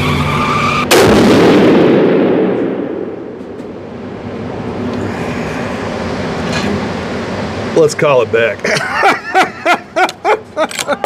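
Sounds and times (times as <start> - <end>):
rifle shot with reverberation: 0.9 - 3.4.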